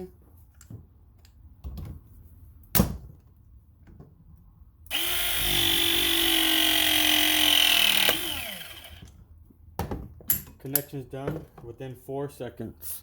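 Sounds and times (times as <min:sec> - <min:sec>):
motor winding down whine: 0:04.9 - 0:09.1
press tool motor running: 0:04.9 - 0:09.1.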